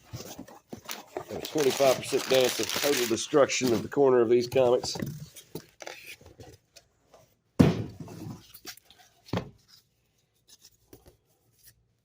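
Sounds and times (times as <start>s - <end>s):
box thumping: 7.6s - 8.4s.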